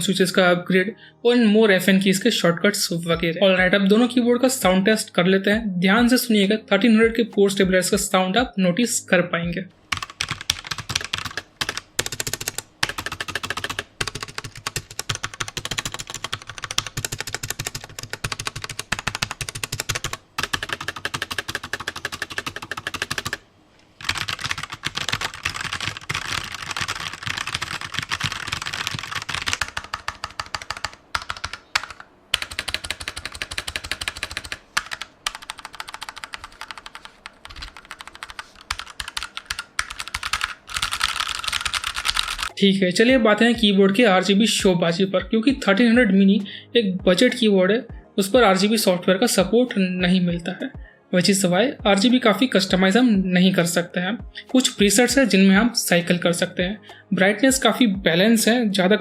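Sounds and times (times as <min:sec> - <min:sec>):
mechanical keyboard typing: 0:09.9 - 0:23.4, 0:24.0 - 0:42.5.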